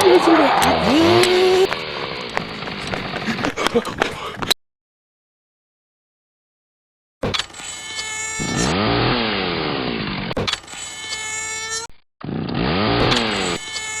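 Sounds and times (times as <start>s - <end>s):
chainsaw engine revving: 0.6s - 3.4s, 8.2s - 10.4s, 12.2s - 14.0s.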